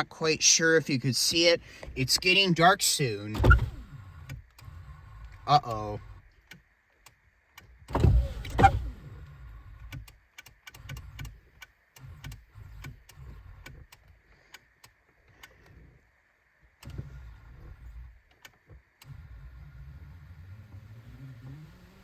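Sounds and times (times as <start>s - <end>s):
power door motor whirring: 3.3s - 6.3s, 7.9s - 10.0s, 18.8s - 22.0s.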